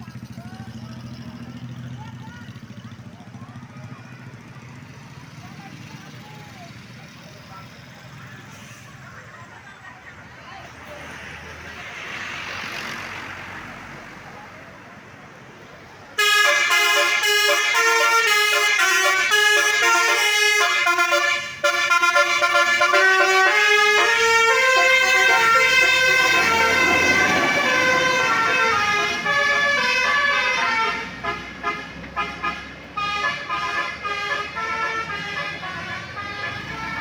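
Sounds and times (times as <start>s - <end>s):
bus engine and road noise: 0.0s - 37.0s
bus musical horn tune: 16.2s - 37.0s.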